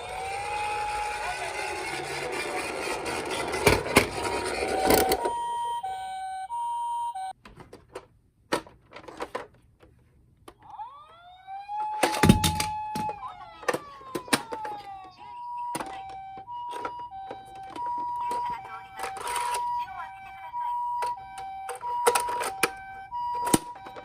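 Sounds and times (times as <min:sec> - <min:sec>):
rolling noise: 0:00.0 - 0:05.7
two-tone hi-lo toy siren: 0:00.0 - 0:07.4, 0:10.6 - 0:24.0
wailing toy siren: 0:00.0 - 0:07.4, 0:10.6 - 0:24.0.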